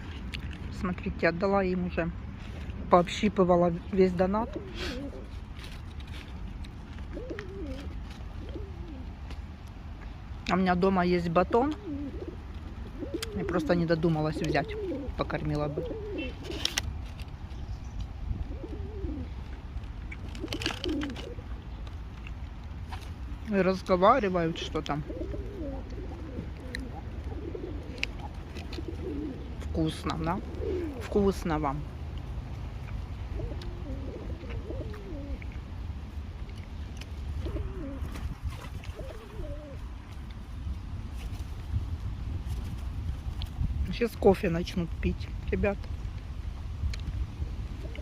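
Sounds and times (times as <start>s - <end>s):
steady low rumble: 0.0s - 38.6s
pigeons cooing: 4.4s - 5.4s, 7.0s - 9.2s, 11.4s - 16.8s, 18.4s - 21.6s, 24.5s - 31.4s, 33.0s - 35.6s, 37.2s - 40.0s, 47.8s - 48.0s.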